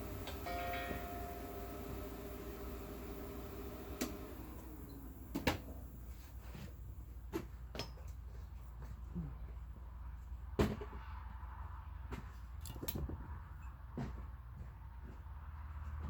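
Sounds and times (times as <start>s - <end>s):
steady low hum: 0.0s - 7.2s.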